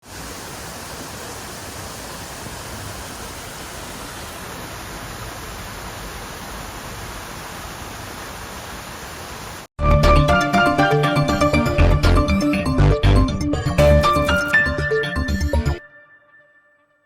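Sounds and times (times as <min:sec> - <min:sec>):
stream water rushing: 0:00.0 - 0:09.7.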